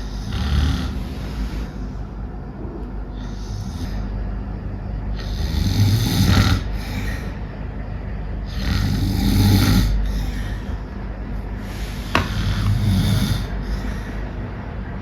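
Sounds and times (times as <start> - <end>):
person snoring loudly: 0.0 - 1.6, 5.2 - 7.3, 8.5 - 10.7, 12.2 - 14.0.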